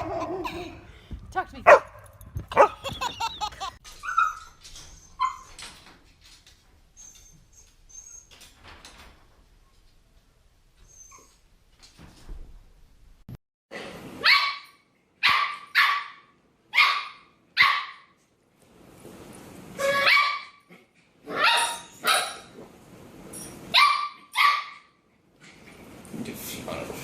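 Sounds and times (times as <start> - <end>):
dog barking: 1.6 - 2.9, 15.2 - 18.1, 23.8 - 24.8.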